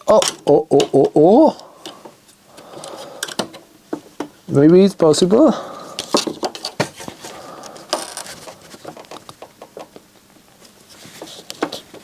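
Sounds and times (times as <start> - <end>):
parts and latches clicking by hand: 0.0 - 4.4, 6.0 - 10.6.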